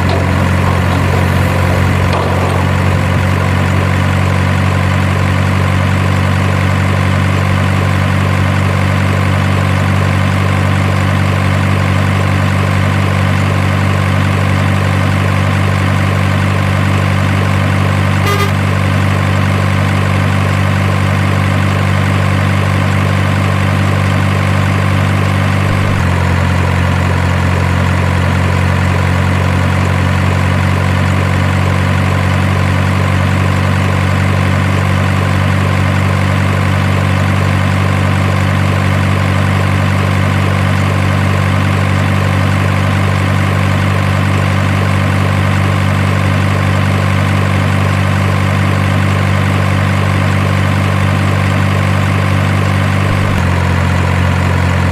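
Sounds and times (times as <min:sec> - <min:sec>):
truck engine idling: 0:00.0 - 0:54.9.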